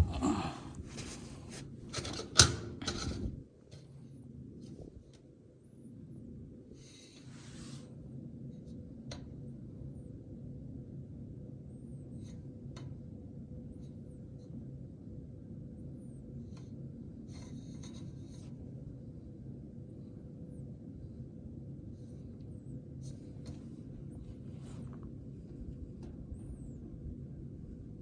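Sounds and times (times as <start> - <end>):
furnace blower humming: 0.0 - 5.0.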